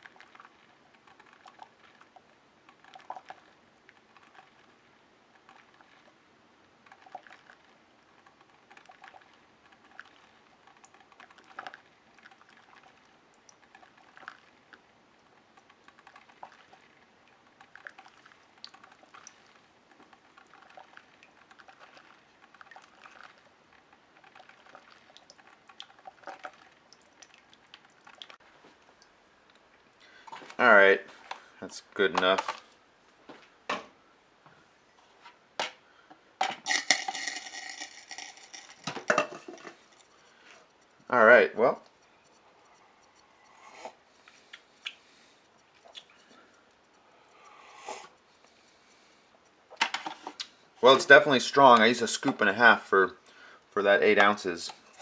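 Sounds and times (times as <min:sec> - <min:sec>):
coffee dripping into mug: 0:00.0 - 0:06.1, 0:06.8 - 0:29.1, 0:36.7 - 0:41.1.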